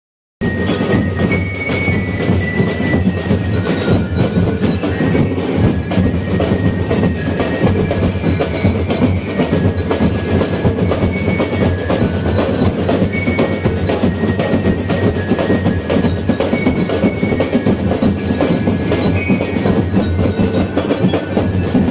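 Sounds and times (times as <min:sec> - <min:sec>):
high ringing tones: 0:00.4 - 0:21.9
many drums beating: 0:00.4 - 0:21.9.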